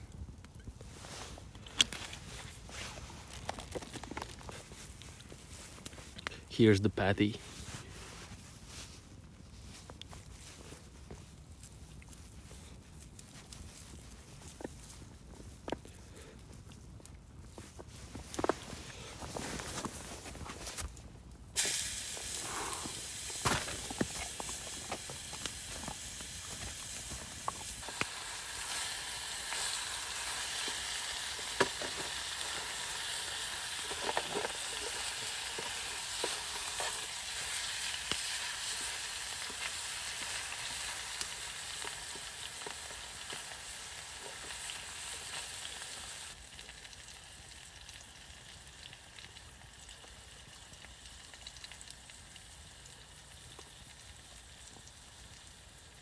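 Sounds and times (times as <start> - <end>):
burger patty sizzling in oil: 21.6 - 56.0.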